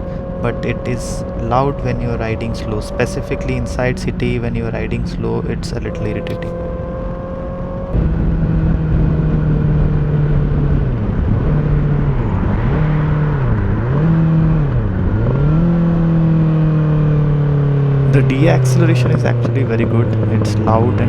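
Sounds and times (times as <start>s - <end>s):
wind noise: 0.0s - 16.2s
sport motorcycle engine revving: 0.0s - 21.0s.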